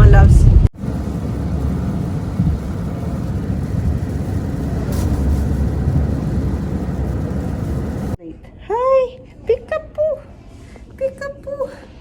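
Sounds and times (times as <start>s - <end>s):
road and engine rumble: 0.5s - 8.2s.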